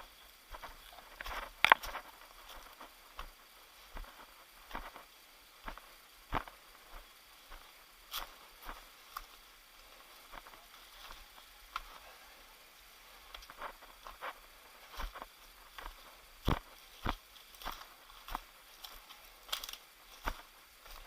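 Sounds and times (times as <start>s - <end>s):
footsteps crunching: 0.0s - 21.0s.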